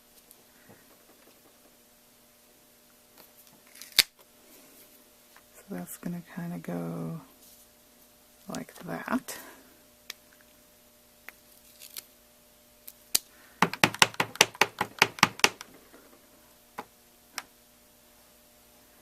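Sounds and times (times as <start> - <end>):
stamp tapping on ink pad: 13.6 - 15.7.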